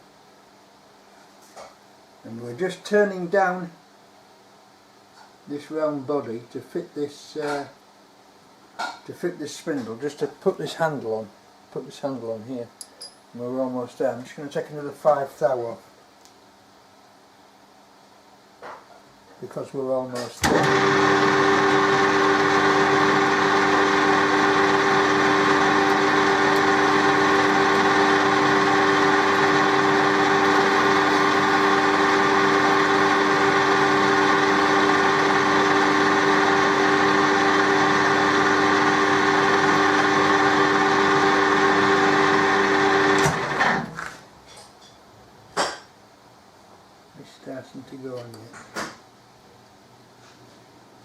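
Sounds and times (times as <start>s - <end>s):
metal lathe running with gear whine: 20.5s - 43.8s.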